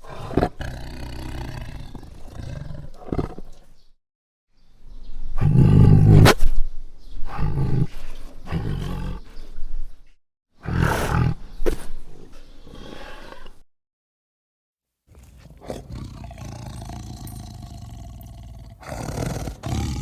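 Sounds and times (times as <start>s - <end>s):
tiger roaring: 10.6s - 11.4s, 15.1s - 20.0s.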